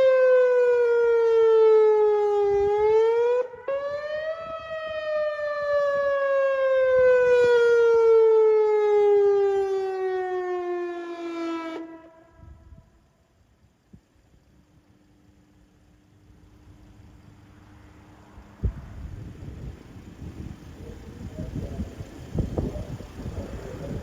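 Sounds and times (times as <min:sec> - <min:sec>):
outdoor warning siren: 0:00.0 - 0:13.5.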